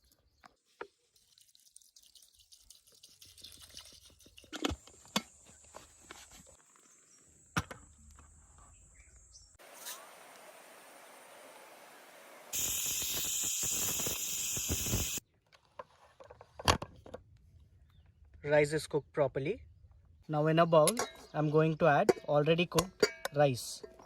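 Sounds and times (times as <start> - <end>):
faint steady hiss: 9.6 - 15.2.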